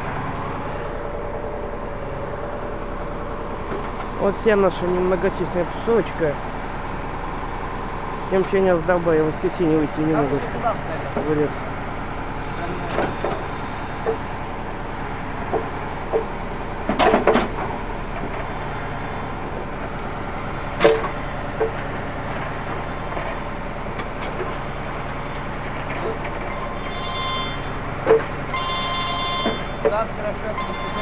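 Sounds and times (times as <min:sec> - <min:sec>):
heavy vehicle engine running: 0:00.0 - 0:31.0
knocks and clunks: 0:15.4 - 0:18.5, 0:20.8 - 0:24.6, 0:25.6 - 0:26.6, 0:28.0 - 0:31.0.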